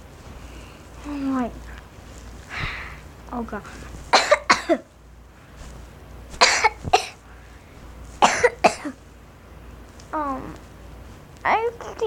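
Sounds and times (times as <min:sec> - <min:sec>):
person coughing: 0:04.2 - 0:04.9, 0:06.4 - 0:07.2, 0:08.2 - 0:09.0.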